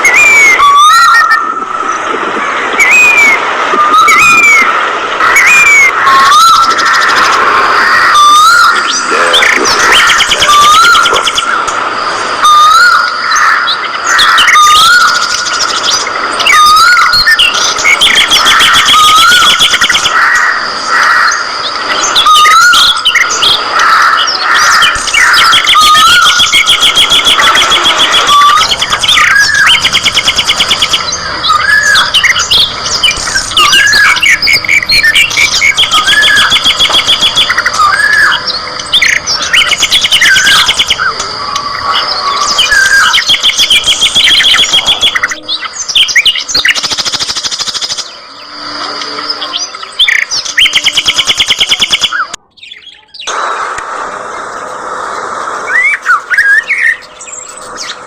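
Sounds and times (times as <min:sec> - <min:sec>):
whistled bird calls: 0:00.0 - 0:02.1, 0:02.7 - 0:53.6, 0:54.3 - 0:58.0
buzzy trills: 0:15.1 - 0:46.6
budgerigars chirping: 0:22.0 - 0:48.1.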